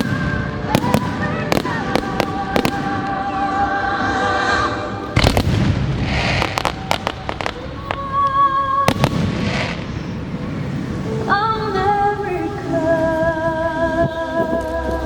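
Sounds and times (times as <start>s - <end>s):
fireworks bangs and crackling: 0.0s - 3.5s, 5.1s - 11.2s
orchestral music: 0.0s - 15.0s.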